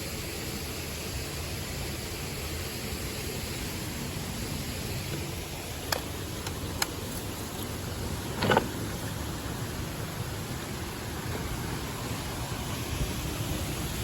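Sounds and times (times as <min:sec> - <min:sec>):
mountain stream rushing: 0:00.4 - 0:14.0
sharp clicks: 0:05.1 - 0:07.3.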